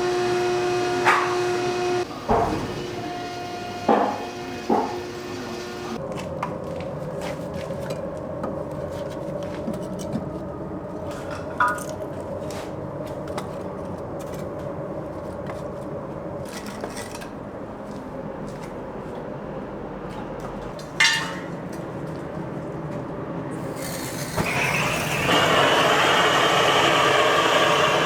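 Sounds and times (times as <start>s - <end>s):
steady machine hum: 0.0s - 6.2s.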